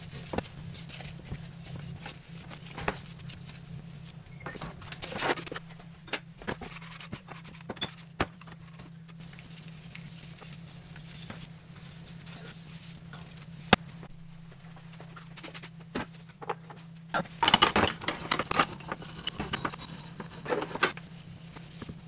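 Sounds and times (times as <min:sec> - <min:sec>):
steady low hum: 0:00.0 - 0:22.0
metal parts clinking: 0:17.4 - 0:21.0.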